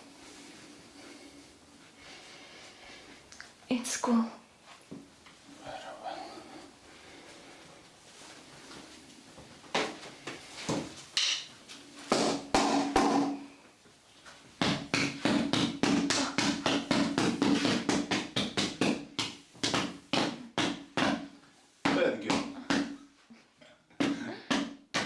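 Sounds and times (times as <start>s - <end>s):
hands slapping a body: 14.6s - 23.1s.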